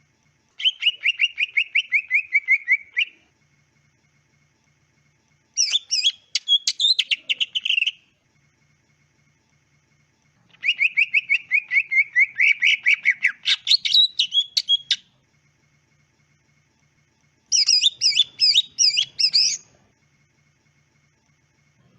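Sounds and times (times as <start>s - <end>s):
bird rapid chirping song: 0.6s - 3.2s, 5.6s - 8.1s, 10.5s - 15.2s, 17.5s - 19.7s.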